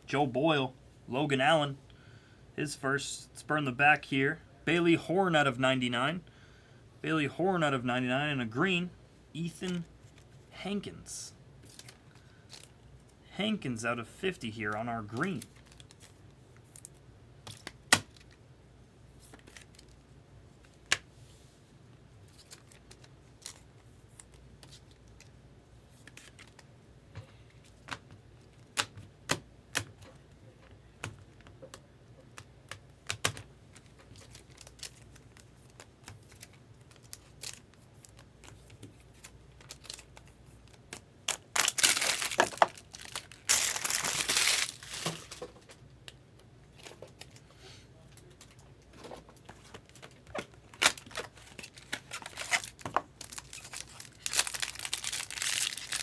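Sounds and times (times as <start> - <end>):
packaging crinkling and tearing: 33.7 - 45.4, 50.6 - 56.0.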